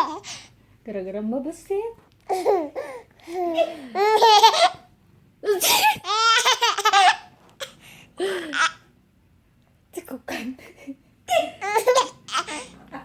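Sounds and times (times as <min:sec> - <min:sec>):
baby laughing: 0:00.0 - 0:00.4, 0:02.3 - 0:08.8, 0:11.3 - 0:12.8.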